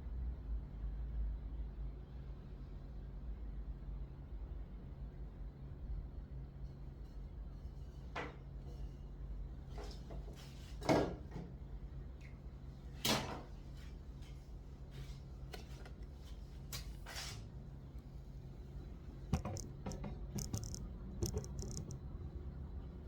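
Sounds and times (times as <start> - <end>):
steady low hum: 17.6 - 23.0
wooden knocks and clacks: 19.3 - 22.0.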